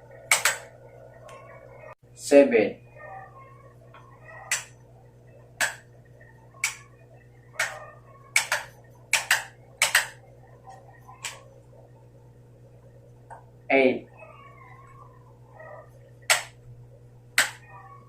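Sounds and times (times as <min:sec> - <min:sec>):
steady low hum: 0:00.0 - 0:18.0
sharp clicks: 0:00.3 - 0:00.7, 0:04.5 - 0:04.8, 0:06.6 - 0:06.8, 0:07.6 - 0:10.2, 0:16.3 - 0:16.6, 0:17.4 - 0:17.6.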